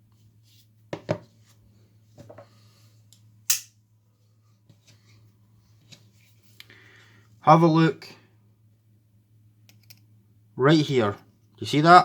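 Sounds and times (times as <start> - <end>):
multi-tool metal clicks: 3.5 - 3.7.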